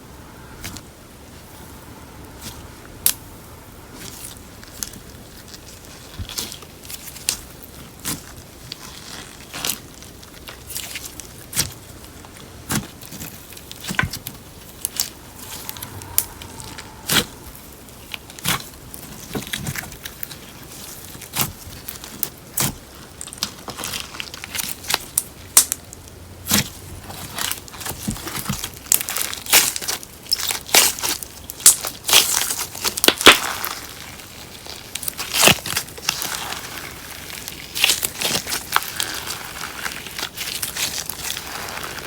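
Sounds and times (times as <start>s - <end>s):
slime crackling and popping: 35.0s - 42.0s.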